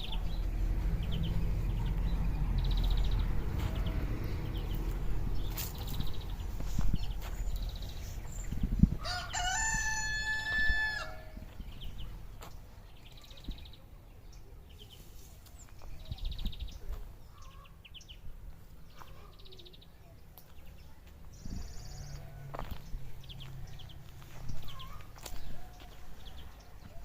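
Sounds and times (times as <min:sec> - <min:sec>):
rooster crowing: 0:09.0 - 0:11.4.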